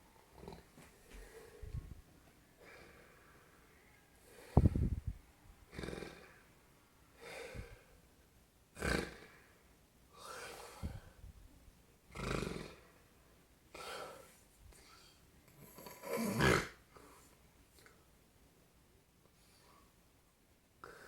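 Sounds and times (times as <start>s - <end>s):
man snoring: 15.8s - 16.8s.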